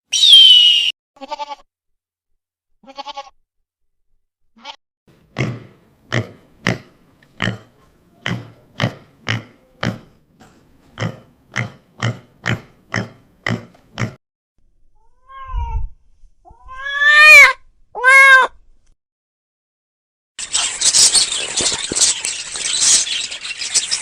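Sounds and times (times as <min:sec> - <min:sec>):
loud high animal calls: 0:00.1 - 0:00.9
animal grunts: 0:11.0 - 0:14.2.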